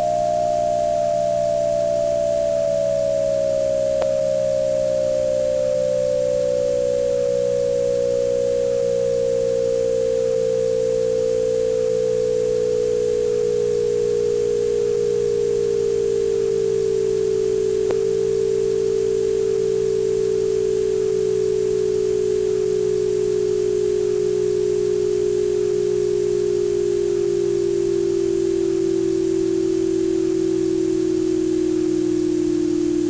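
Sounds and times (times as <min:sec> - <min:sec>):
tape hiss: 0:00.0 - 0:33.0
click: 0:03.9 - 0:04.4, 0:16.2 - 0:21.8, 0:24.9 - 0:25.9.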